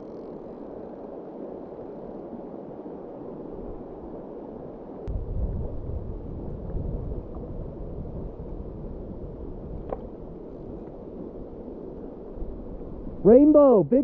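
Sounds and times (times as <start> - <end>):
wind buffeting microphone: 5.1 - 13.3.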